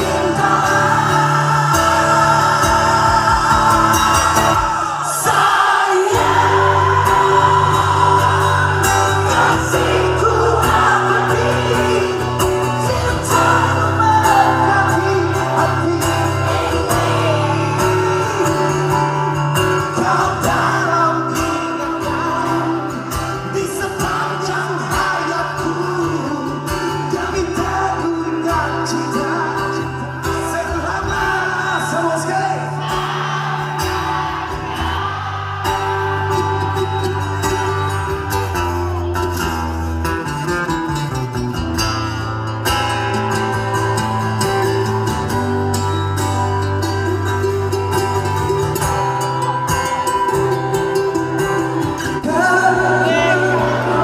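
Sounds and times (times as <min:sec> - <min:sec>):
bass line: 0:00.0 - 0:05.5, 0:06.2 - 0:25.0
person singing: 0:00.0 - 0:39.7, 0:48.3 - 0:54.0
live band playing pop song: 0:00.0 - 0:54.0.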